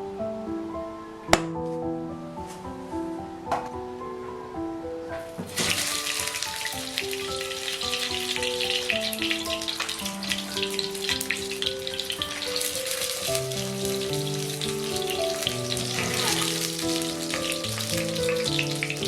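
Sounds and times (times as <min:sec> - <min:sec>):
gentle sustained background music: 0:00.0 - 0:19.0
dense crackling hiss: 0:05.2 - 0:19.0.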